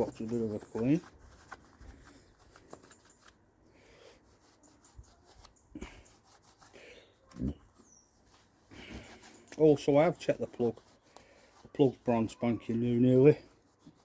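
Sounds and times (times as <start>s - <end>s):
faint clicks and rubbing: 0.0s - 3.4s.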